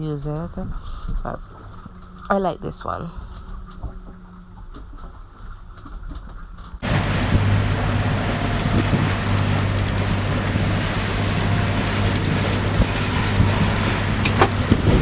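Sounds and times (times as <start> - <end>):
constant low hum: 0.0 - 15.0
rush of wind and water: 6.8 - 15.0.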